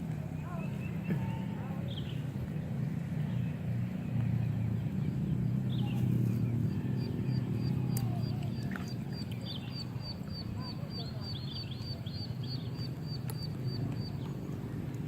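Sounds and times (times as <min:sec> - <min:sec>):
steady low rumble: 0:00.0 - 0:15.0
faint high chirp: 0:05.7 - 0:14.6.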